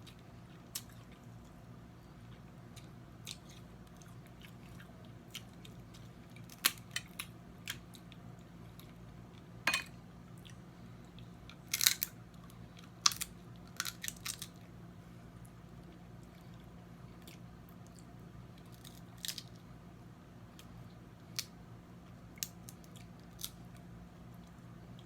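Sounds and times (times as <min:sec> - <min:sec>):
steady low hum: 0:00.0 - 0:25.0
crab shells cracking: 0:11.5 - 0:12.2, 0:12.9 - 0:14.6, 0:18.6 - 0:19.5, 0:22.4 - 0:23.6.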